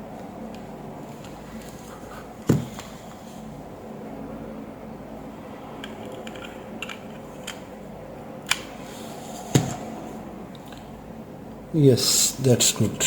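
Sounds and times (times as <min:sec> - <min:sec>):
steady low hum: 0:00.0 - 0:13.0
small parts clicking and tapping: 0:05.8 - 0:07.7.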